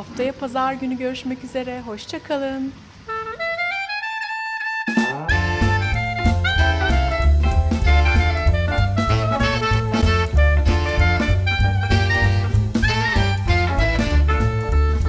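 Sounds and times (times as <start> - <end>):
saxophone or brass melody: 3.1 - 15.0
bass: 4.9 - 15.0
drum kit beat: 4.9 - 15.0.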